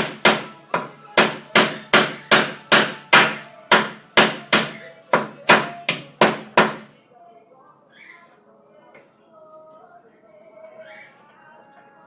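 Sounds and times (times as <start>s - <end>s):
hammer striking: 0.0s - 6.9s.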